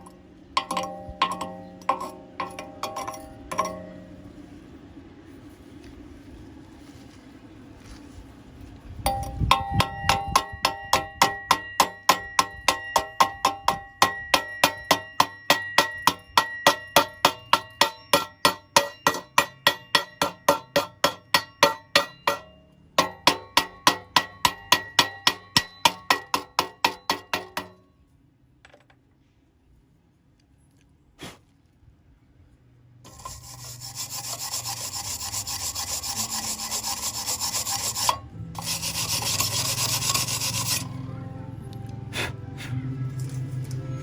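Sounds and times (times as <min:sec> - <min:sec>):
hammer blows on metal: 0:09.1 - 0:27.8.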